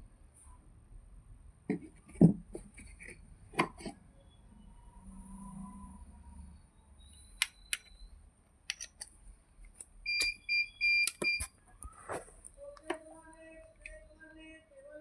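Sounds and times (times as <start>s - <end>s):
short electronic beeps: 7.0s - 8.2s.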